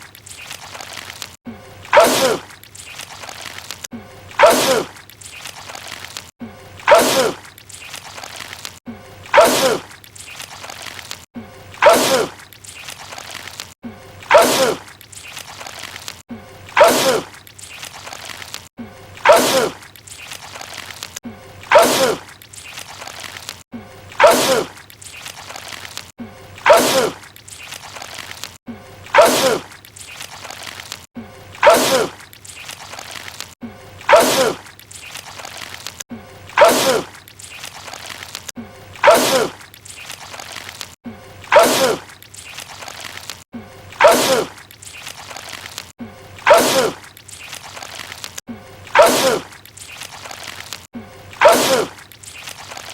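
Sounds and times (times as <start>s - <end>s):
man sneezing: 26.6s - 27.2s, 29.2s - 29.6s, 31.6s - 32.1s, 36.6s - 37.1s, 41.5s - 42.0s, 44.0s - 44.5s, 46.5s - 47.0s, 49.0s - 49.5s.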